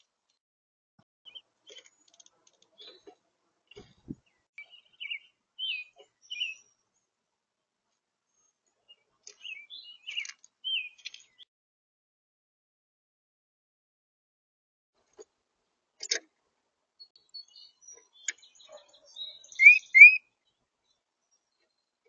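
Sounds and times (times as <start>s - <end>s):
small songbird chirping: 3.7s - 7.1s, 8.4s - 11.5s, 17.0s - 22.0s.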